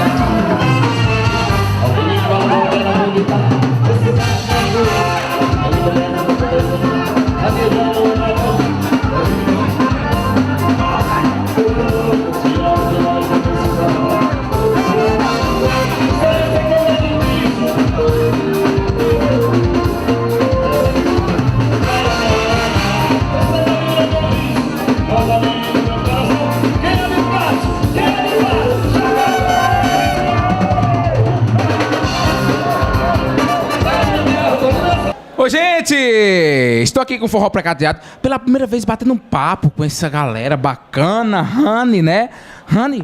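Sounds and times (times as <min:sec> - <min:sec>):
drum kit beat: 0:00.0 - 0:35.2
person singing: 0:00.0 - 0:35.2
band melody lines: 0:00.0 - 0:35.3.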